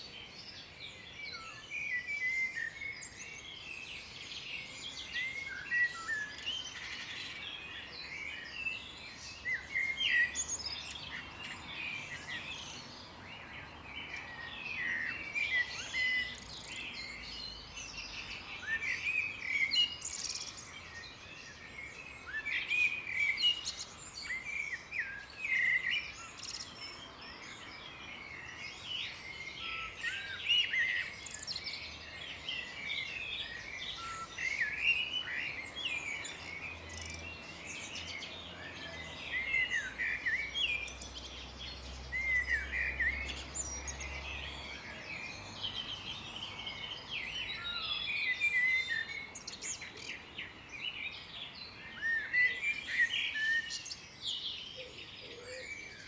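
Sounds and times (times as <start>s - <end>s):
songbirds singing and chirping: 0.0s - 56.0s.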